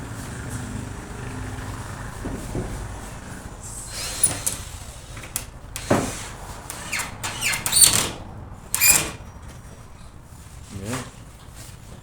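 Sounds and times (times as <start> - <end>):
boards scraping on workbench: 3.9 - 8.2.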